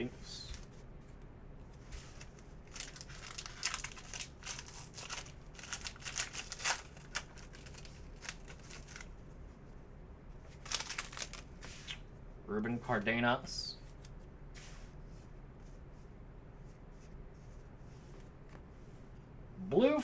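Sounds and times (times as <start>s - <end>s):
plastic packaging crinkling: 2.0s - 9.2s, 10.5s - 12.0s.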